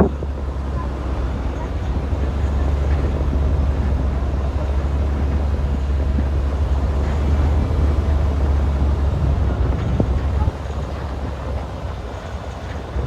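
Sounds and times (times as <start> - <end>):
car cabin road and engine noise: 0.0 - 13.0.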